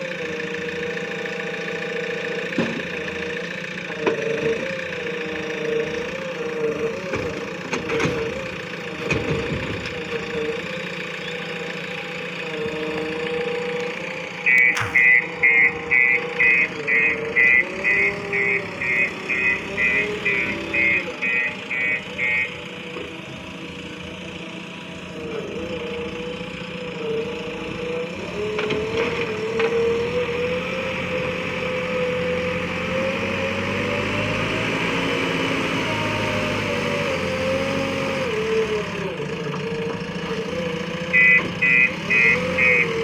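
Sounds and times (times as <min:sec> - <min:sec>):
backhoe diesel engine working: 0:00.0 - 0:43.0
short even beeps: 0:14.5 - 0:22.5.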